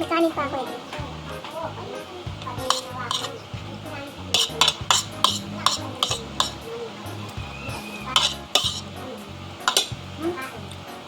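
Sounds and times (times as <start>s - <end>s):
cutlery clinking on a plate: 2.6s - 3.4s, 4.3s - 6.7s, 8.2s - 8.8s, 9.7s - 10.0s.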